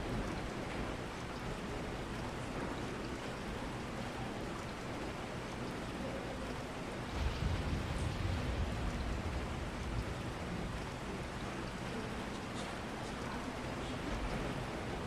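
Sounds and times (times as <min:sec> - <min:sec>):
steady rain: 0:00.0 - 0:15.0
low rumble: 0:07.1 - 0:11.5.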